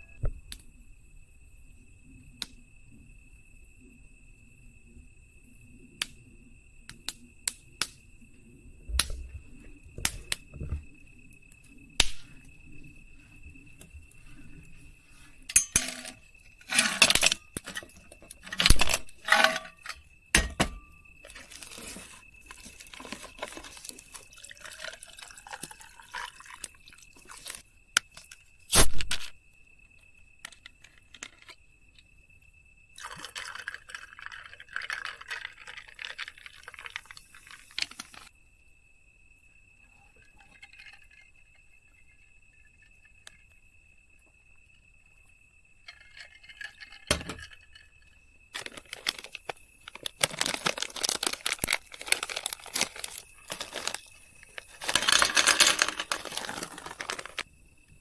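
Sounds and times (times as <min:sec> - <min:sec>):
clinks and knocks: 0:15.5 - 0:23.9, 0:45.8 - 0:57.4
pouring water: 0:21.2 - 0:27.6, 0:33.0 - 0:38.3, 0:48.6 - 0:57.4.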